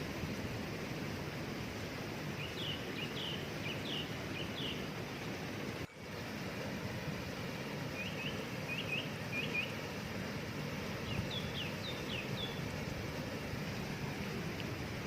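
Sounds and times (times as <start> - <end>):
waterfall rushing: 0.0 - 15.0
small bird chirping: 2.4 - 4.8, 11.0 - 12.6.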